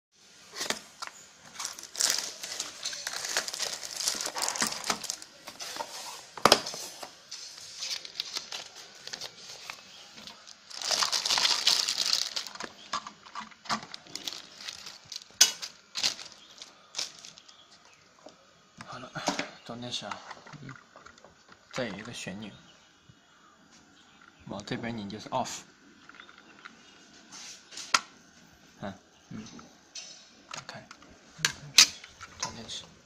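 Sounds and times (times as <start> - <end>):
packaging crinkling and rustling: 0.5 - 18.0.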